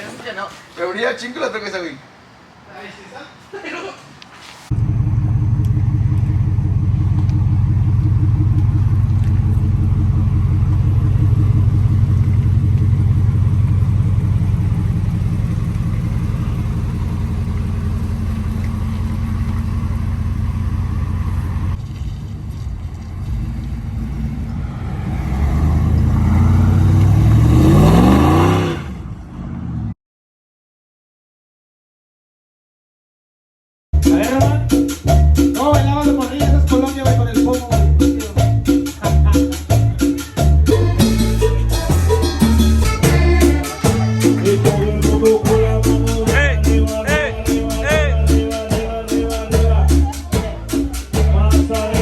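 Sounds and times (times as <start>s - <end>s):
truck engine running and revving: 4.7s - 29.9s, 39.8s - 52.0s.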